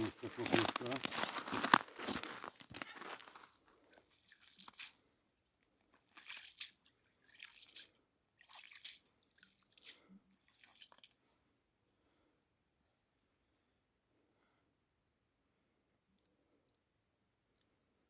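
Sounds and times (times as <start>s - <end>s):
faint crunching and crackling: 0.0s - 5.0s.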